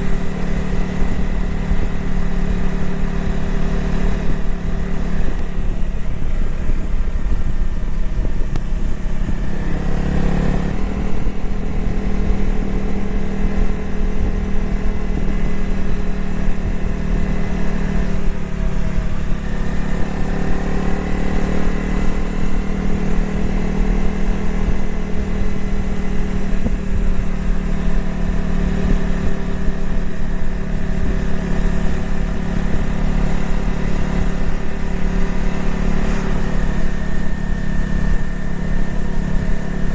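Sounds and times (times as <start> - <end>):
motorcycle engine running: 0.0 - 39.9.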